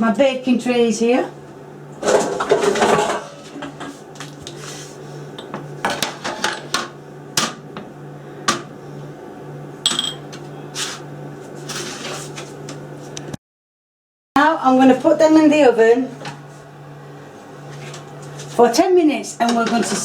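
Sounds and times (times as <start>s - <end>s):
ceramic ramekins clinking on tray: 9.9s - 10.2s.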